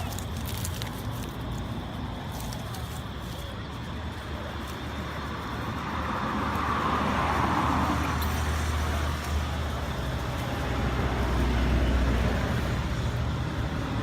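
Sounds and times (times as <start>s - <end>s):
vehicle passing: 3.5s - 14.0s.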